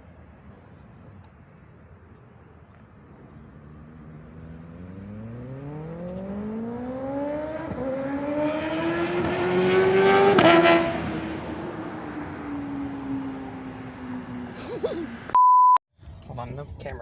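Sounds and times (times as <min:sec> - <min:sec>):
vehicle accelerating past: 0:03.0 - 0:15.3.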